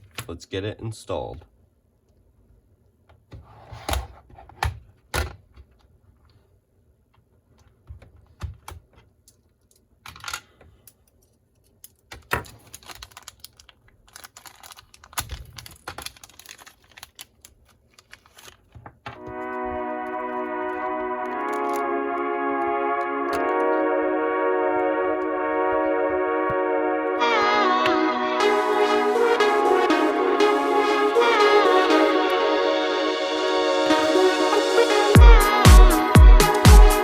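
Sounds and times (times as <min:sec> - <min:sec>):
small parts clicking and rattling: 0:09.3 - 0:18.8
background music: 0:19.2 - 0:37.0.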